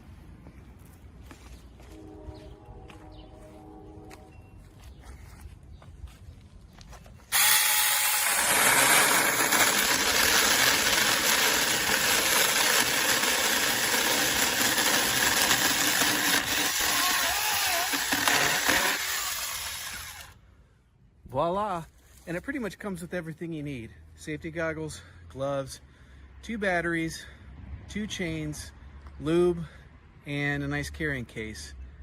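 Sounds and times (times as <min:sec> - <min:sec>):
chainsaw cutting wood: 0:07.3 - 0:20.4.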